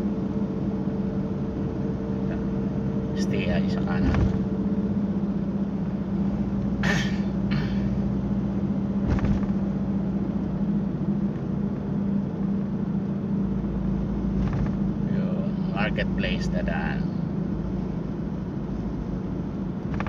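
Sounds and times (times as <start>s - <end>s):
car engine and road hum: 0.0s - 20.0s
brief knocks: 9.0s - 9.6s.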